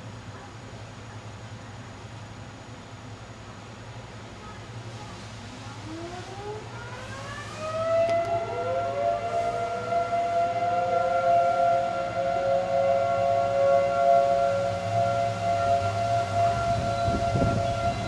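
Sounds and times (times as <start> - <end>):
siren wailing: 5.9 - 18.0.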